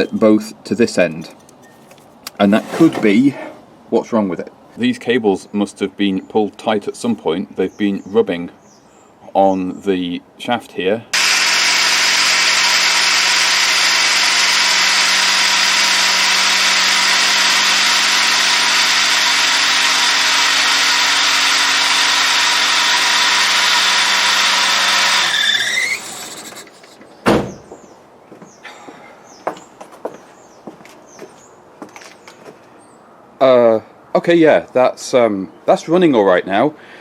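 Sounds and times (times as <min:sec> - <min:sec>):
belt squealing: 0:01.4 - 0:03.2, 0:23.0 - 0:27.0
car engine running: 0:11.2 - 0:25.3
sharp knock: 0:27.2 - 0:27.8.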